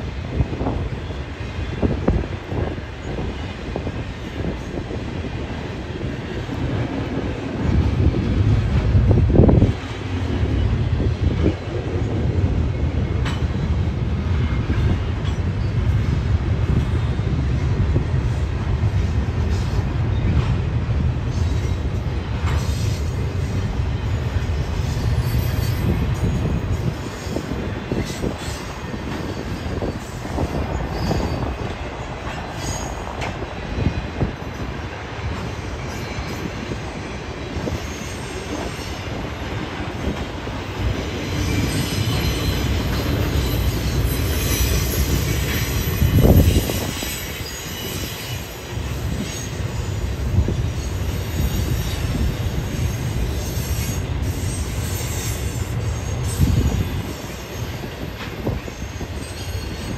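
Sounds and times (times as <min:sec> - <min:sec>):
freight train rumbling: 0:00.0 - 0:59.9
wheel squeal: 0:24.7 - 0:31.8, 0:41.3 - 0:59.9.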